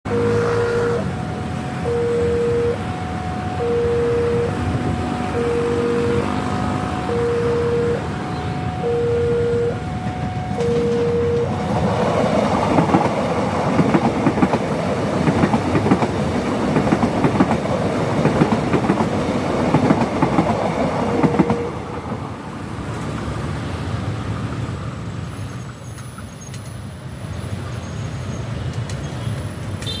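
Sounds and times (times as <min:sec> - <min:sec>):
road traffic noise: 0:00.0 - 0:30.0
level-crossing warning tones: 0:00.1 - 0:22.6
train wheels clattering over rails: 0:10.6 - 0:23.2.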